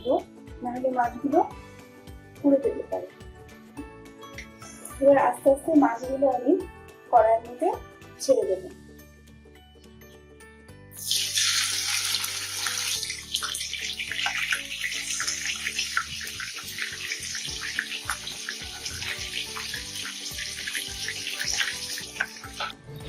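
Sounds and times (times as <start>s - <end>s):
fish frying in hot oil: 11.0s - 22.7s.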